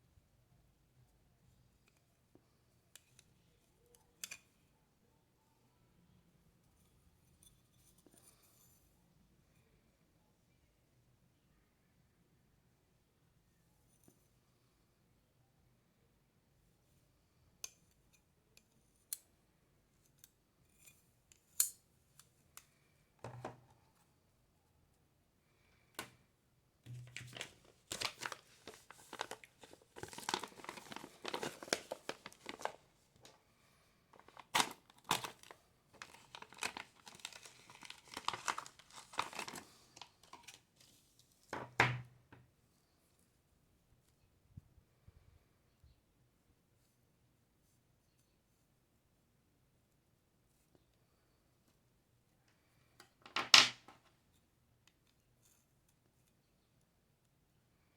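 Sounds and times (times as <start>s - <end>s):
packaging crinkling and tearing: 26.9s - 33.4s, 34.2s - 40.6s.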